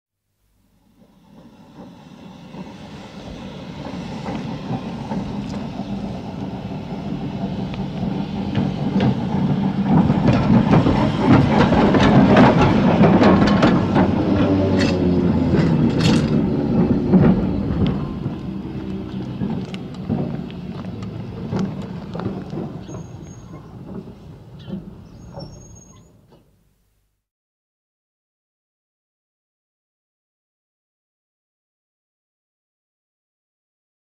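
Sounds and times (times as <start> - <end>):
electric tram rumbling: 0.7 - 26.6
wheels clattering on rails: 1.0 - 26.5.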